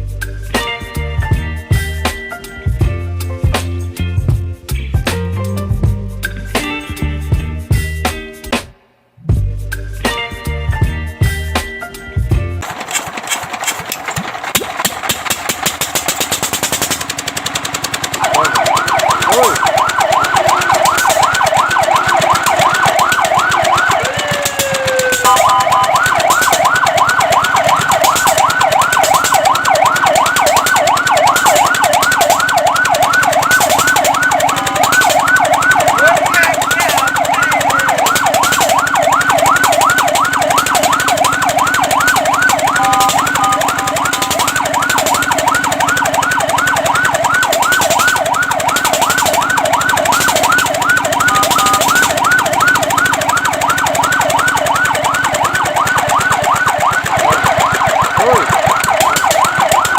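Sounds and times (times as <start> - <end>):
fire truck siren yelping: 12.7 - 59.9.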